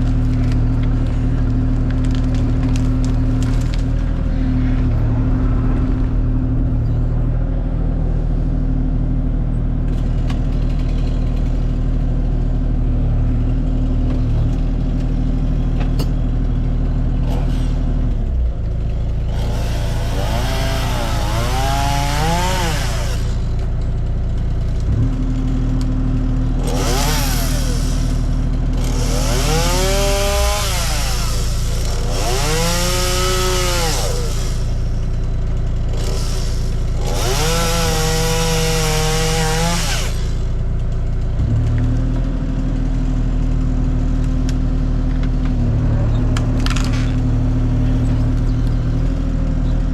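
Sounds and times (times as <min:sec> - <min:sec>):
excavator diesel engine running: 0:00.0 - 0:49.9
chainsaw revving and cutting: 0:09.9 - 0:12.4, 0:17.0 - 0:44.6, 0:45.4 - 0:49.4.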